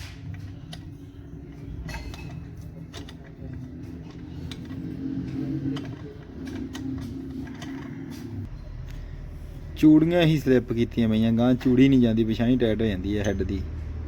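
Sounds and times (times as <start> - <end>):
hand tools clicking on metal: 0.0 - 8.5
steady low hum: 0.0 - 14.0.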